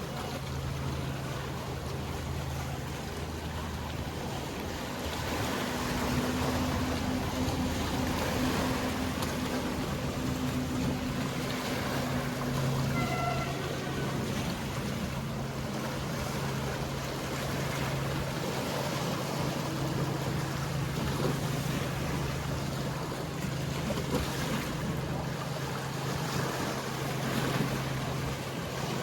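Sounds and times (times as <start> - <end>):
boat engines humming: 0.0 - 29.0
sea water wash: 0.0 - 29.0
short high-pitched sound: 12.9 - 14.1.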